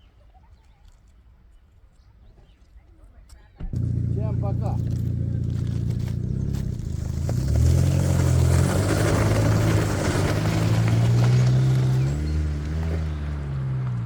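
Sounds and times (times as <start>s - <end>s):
outboard motor running: 3.7s - 7.4s.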